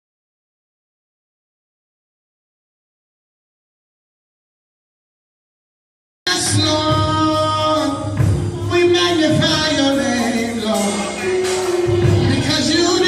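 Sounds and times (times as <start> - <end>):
music with singing: 6.3 - 13.0.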